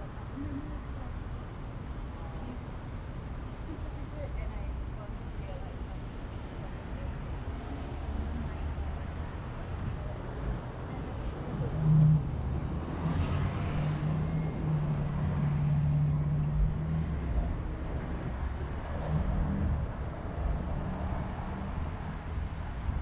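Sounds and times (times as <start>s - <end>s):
traffic rumble: 0.0s - 23.0s
vehicle engine low hum: 6.3s - 23.0s.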